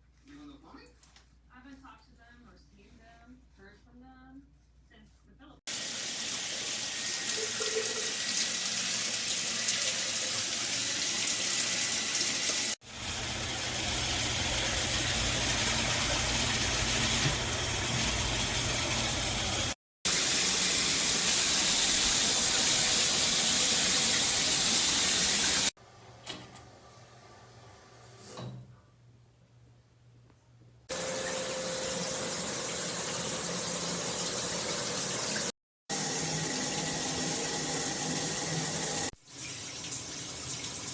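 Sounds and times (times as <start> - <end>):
shower water spraying: 5.7 - 25.7, 30.9 - 40.9.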